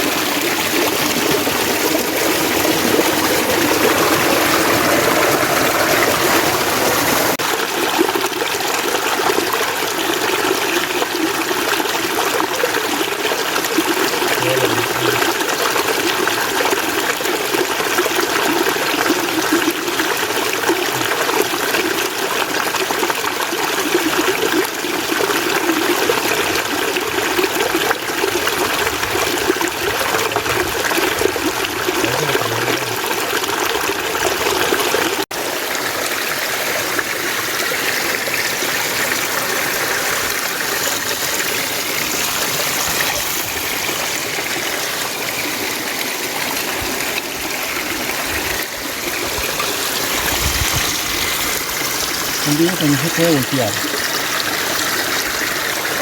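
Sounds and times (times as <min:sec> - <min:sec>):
stream water flowing: 0:00.0 - 0:56.0.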